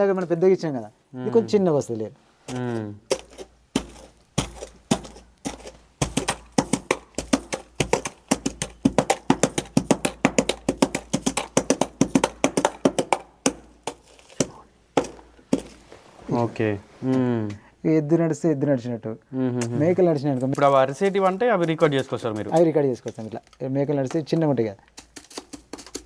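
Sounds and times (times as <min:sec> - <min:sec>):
galloping horse hoofbeats: 0:03.1 - 0:15.8.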